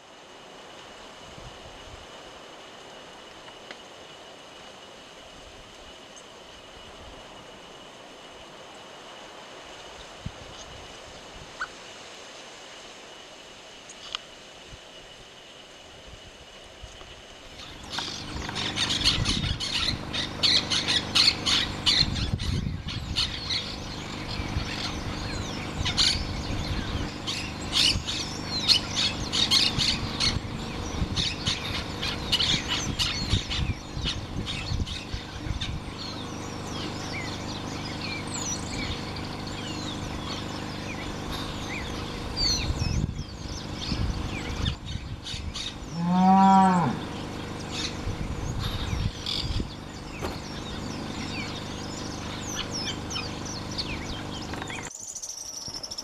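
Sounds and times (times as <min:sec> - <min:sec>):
low pitched bird call: 0:17.6 - 0:54.9
birds chirping: 0:17.6 - 0:56.0.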